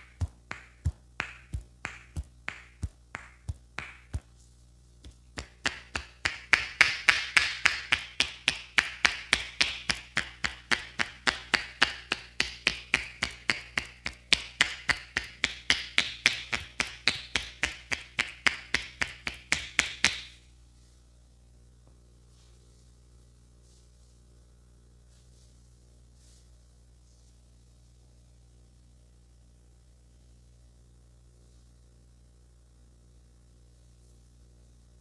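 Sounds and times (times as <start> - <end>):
hand slaps of head massage: 0.0 - 4.4, 5.0 - 20.4.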